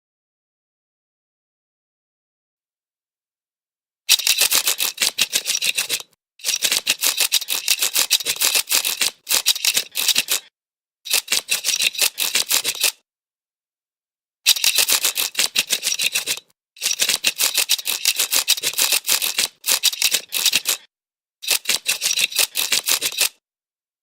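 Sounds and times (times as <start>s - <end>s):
scraper rasping fish scales: 4.1s - 10.5s, 11.1s - 13.0s, 14.5s - 23.4s.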